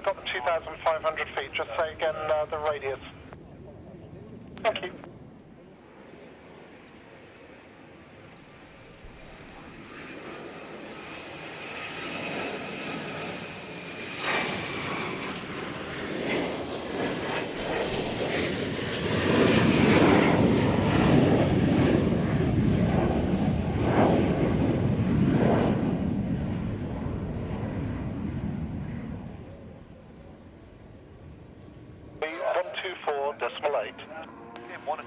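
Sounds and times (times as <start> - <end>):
aircraft engine passing: 0.0 - 35.0.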